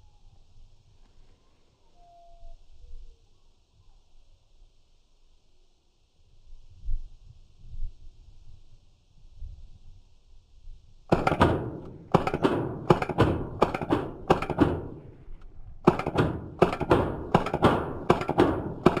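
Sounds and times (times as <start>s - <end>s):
rapid rifle shots: 11.1s - 19.0s.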